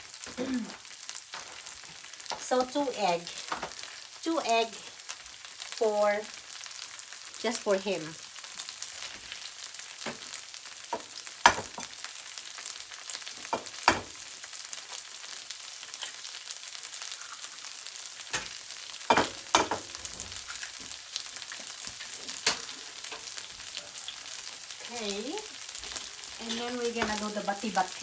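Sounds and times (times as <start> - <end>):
hash browns frying in oil: 0.0 - 28.0.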